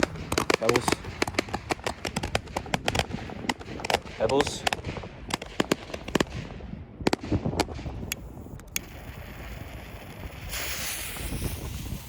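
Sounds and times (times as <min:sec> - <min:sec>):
firecrackers banging: 0:00.0 - 0:12.0
steady hiss: 0:08.2 - 0:12.0.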